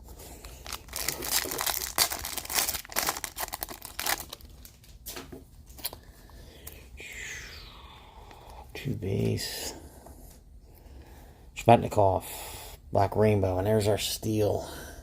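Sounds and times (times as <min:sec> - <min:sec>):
wrapper tearing and crinkling: 0:00.4 - 0:04.9.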